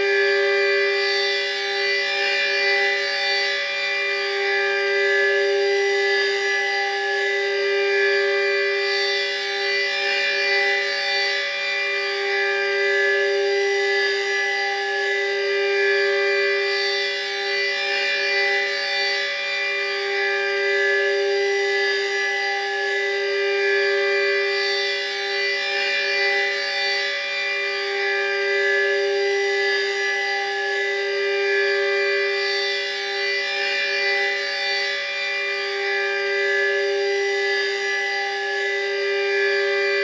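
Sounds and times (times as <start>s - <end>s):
civil defence siren steady tone: 0.0s - 40.0s.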